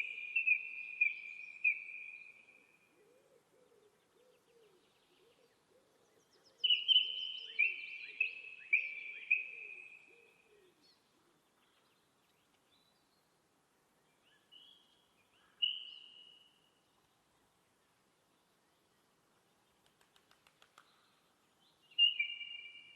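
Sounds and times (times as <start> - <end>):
faint background noise: 0.0 - 22.9
bird whistling calls: 22.0 - 22.9.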